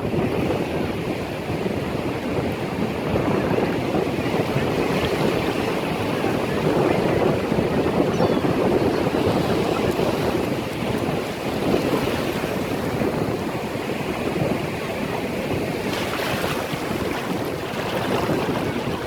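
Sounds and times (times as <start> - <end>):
wind buffeting microphone: 0.0 - 19.0
ocean surf breaking: 3.8 - 19.0.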